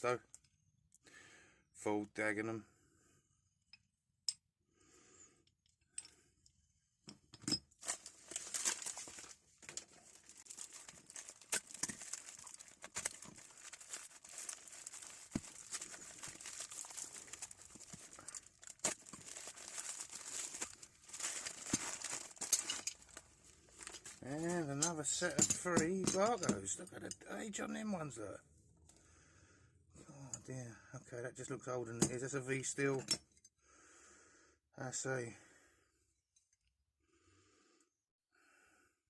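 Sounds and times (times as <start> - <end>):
packaging torn and crumpled: 7.8 - 24.6.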